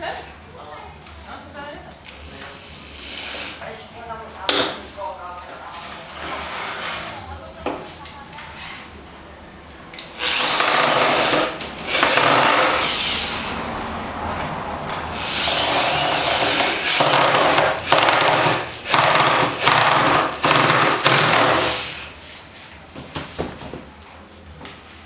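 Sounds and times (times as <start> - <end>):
cordless drill driving screws: 10.2 - 13.2, 15.2 - 22.0.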